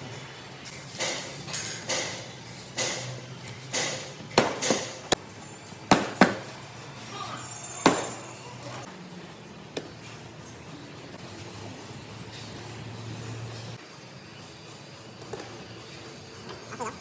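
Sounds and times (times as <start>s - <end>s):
hammer striking sheet metal: 0.9s - 5.1s.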